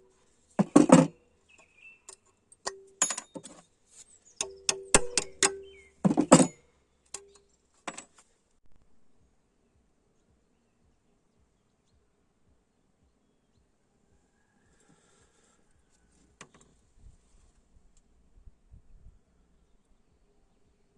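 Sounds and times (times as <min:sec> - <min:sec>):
metal striking metal: 0:04.4 - 0:06.6.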